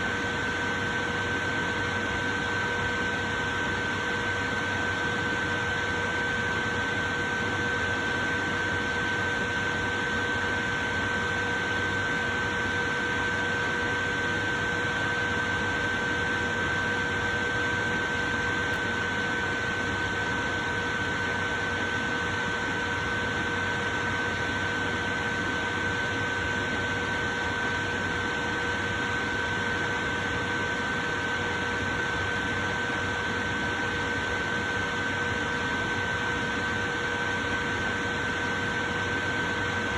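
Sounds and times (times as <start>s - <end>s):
electric fan running: 0.0s - 39.9s.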